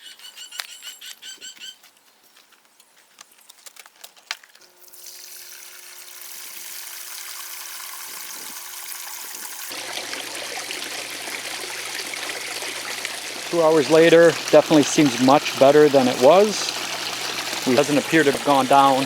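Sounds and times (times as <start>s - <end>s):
water trickling in a fountain: 4.8s - 19.0s.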